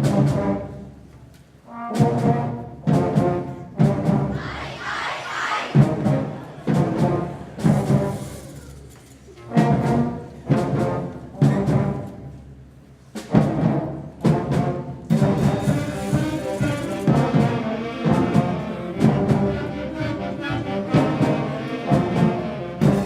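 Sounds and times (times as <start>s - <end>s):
timpani: 0.0s - 23.0s
concert band playing: 1.7s - 8.4s, 13.2s - 23.0s.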